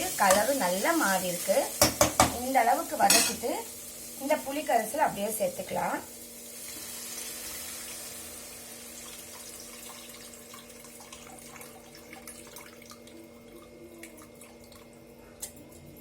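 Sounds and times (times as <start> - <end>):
liquid hissing in a hot pan: 0.0 - 12.4.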